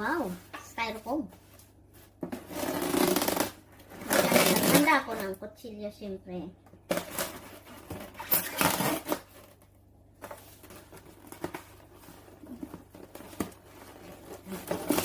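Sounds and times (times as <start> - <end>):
knife cutting styrofoam: 2.4 - 5.0, 6.9 - 9.5, 14.2 - 15.0.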